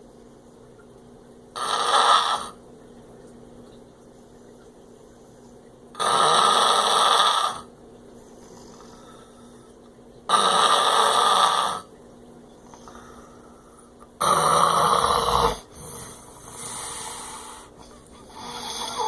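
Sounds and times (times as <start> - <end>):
quiet breathing: 8.1 - 9.9, 12.5 - 14.1, 15.2 - 19.0
man snoring: 14.2 - 16.0, 18.3 - 19.0.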